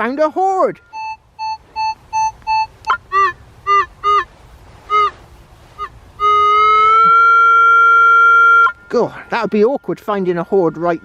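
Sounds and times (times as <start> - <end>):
long steady horn-like tone: 0.7 - 11.0
goose-like honks: 2.8 - 4.3, 4.9 - 5.2, 5.8 - 9.7.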